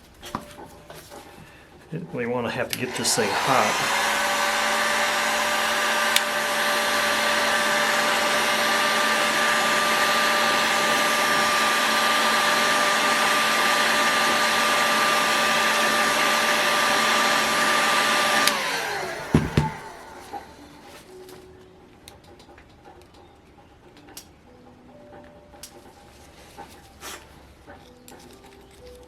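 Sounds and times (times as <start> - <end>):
heat gun blowing with motor whine: 2.7 - 20.7.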